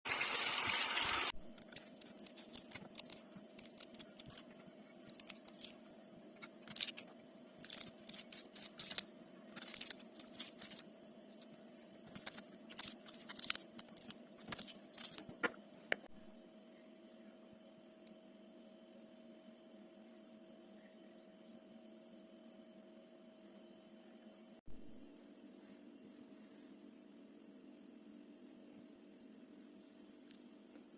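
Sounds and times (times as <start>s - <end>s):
faint steady hum: 0.2s - 30.9s
knife cutting and scraping radish: 1.3s - 5.8s, 6.4s - 15.5s.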